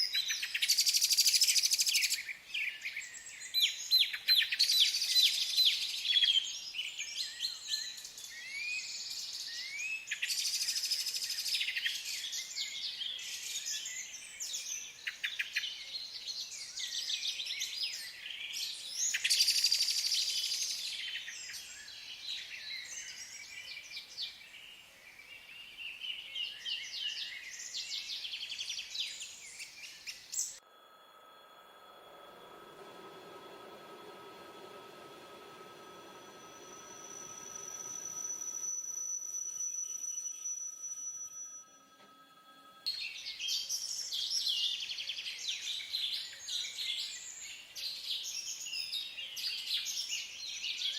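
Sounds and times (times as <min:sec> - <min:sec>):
songbirds singing: 0:00.0 - 0:30.6, 0:42.9 - 0:50.9
faint steady hum: 0:26.3 - 0:50.9.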